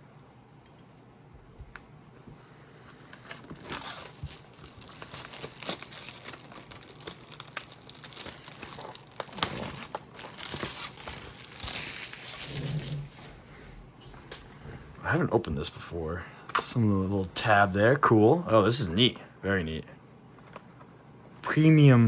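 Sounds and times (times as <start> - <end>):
plastic wrap crinkling and tearing: 3.1 - 13.1.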